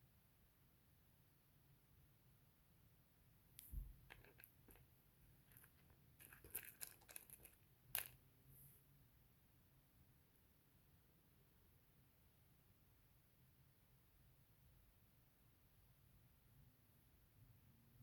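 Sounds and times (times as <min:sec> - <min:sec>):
light clicks of stone chips: 0:03.6 - 0:08.2
parcel crinkling: 0:03.6 - 0:08.2.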